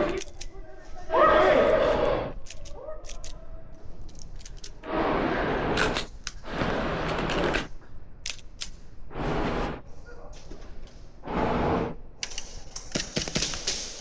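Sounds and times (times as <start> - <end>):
airsoft gun shots: 12.8 - 14.0.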